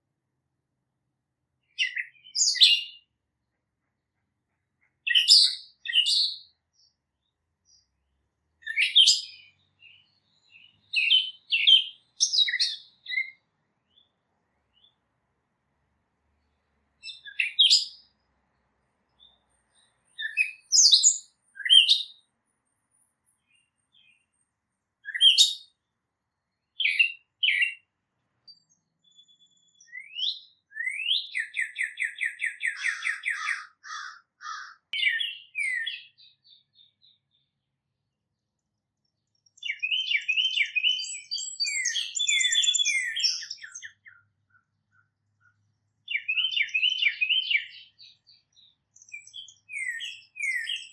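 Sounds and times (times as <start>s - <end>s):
songbirds chirping and singing: 1.6s - 15.1s, 16.3s - 50.9s
bird trills: 28.5s - 37.0s, 39.6s - 50.9s.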